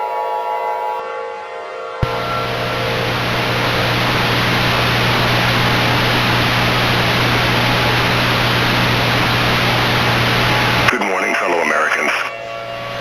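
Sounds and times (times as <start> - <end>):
low hum: 2.0 - 11.4
static hiss: 2.0 - 13.0.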